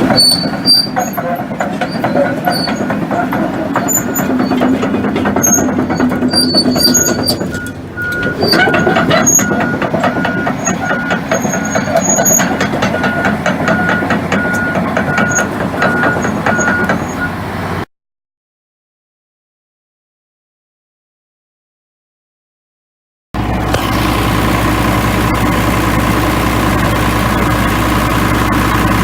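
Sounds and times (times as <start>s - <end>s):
steel tracks clanking: 0.0s - 17.8s
diesel engine running: 0.0s - 17.9s, 23.4s - 29.0s
travel alarm beeping: 5.4s - 17.3s.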